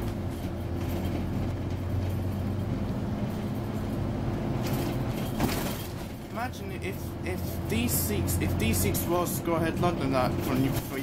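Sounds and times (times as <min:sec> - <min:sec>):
bus diesel engine running: 0:00.0 - 0:11.0
road noise: 0:00.0 - 0:11.0.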